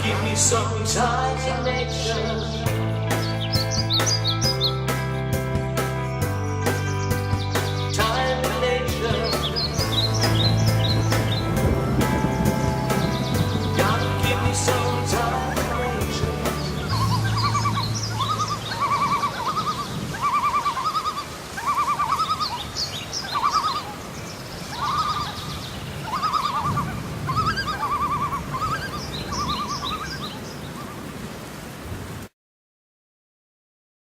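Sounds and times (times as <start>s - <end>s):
high chirps: 2.6s - 5.2s, 9.0s - 23.8s
short trilled animal calls: 16.8s - 24.0s, 24.7s - 30.4s.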